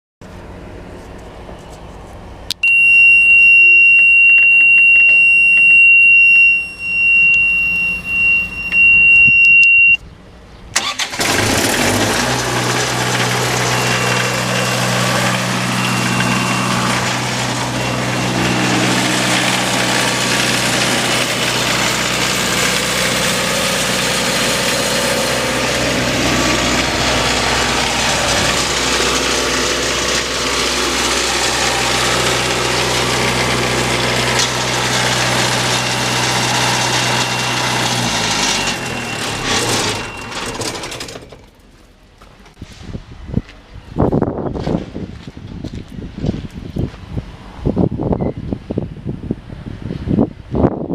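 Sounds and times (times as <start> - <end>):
high-pitched buzzer: 2.6 - 10.0
diesel generator engine starting: 10.7 - 42.7.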